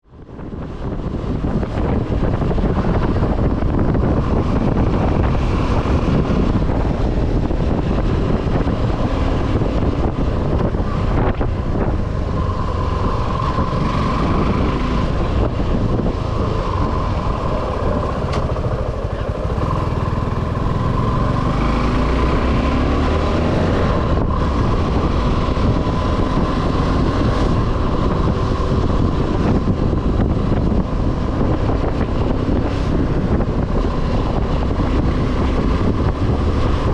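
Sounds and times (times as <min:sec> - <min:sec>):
wind on microphone: 0:00.0 - 0:36.9
motorcycle engine running: 0:00.1 - 0:36.9.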